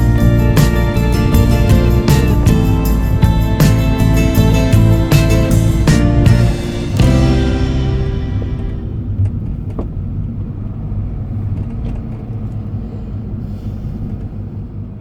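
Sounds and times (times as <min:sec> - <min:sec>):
low steady rumble: 0:00.0 - 0:15.0.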